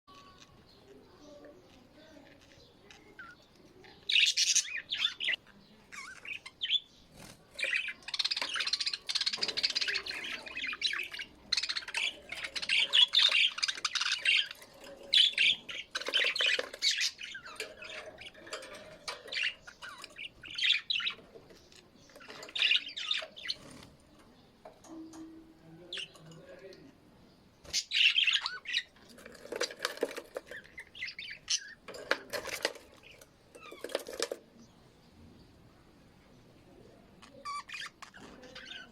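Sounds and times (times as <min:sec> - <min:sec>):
small birds chirping and squawking: 0:00.0 - 0:38.9.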